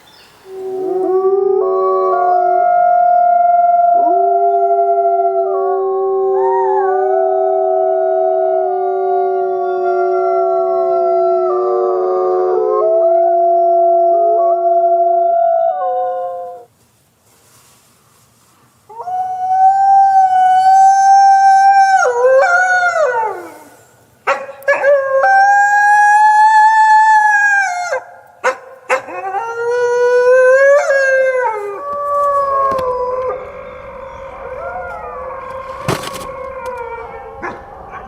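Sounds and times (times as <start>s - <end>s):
wolf howling: 28.9s - 38.0s
wolves howling in chorus: 28.9s - 38.0s.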